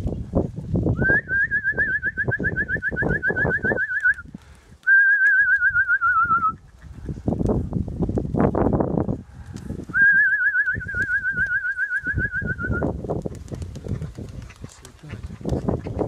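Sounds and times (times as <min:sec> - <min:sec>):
wind buffeting microphone: 0:00.0 - 0:04.9, 0:05.6 - 0:16.0
warbling whistles: 0:01.0 - 0:06.6, 0:09.9 - 0:13.0.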